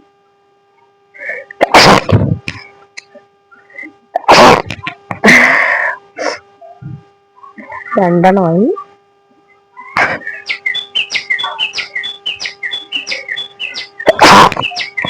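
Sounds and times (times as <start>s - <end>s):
person sneezing: 1.2s - 2.3s, 4.2s - 5.5s.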